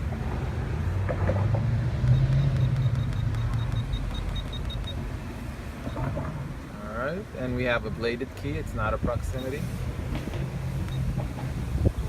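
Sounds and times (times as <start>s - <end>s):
vehicle engine rumble: 0.0s - 12.0s
faint high electronic beeps: 2.1s - 5.0s.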